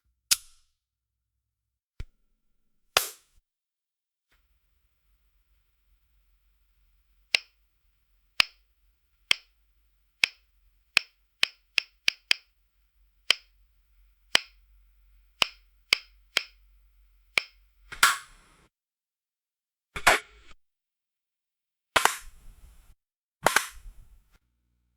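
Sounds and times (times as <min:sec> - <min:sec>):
sharp dry clicks: 0:10.2 - 0:10.4, 0:11.0 - 0:12.5, 0:15.4 - 0:16.6.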